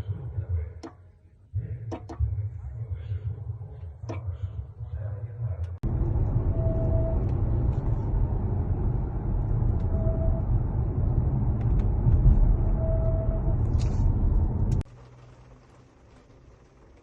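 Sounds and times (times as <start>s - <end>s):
road and engine rumble: 5.6s - 17.0s.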